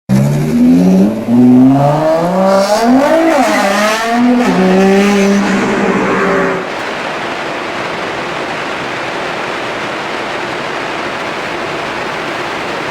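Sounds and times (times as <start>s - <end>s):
car engine revving: 0.1s - 7.0s.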